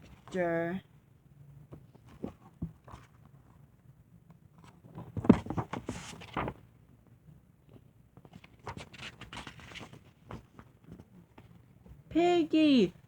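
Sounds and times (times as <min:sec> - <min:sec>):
paper book rustling: 0:01.9 - 0:03.6, 0:04.6 - 0:06.8, 0:07.7 - 0:11.7.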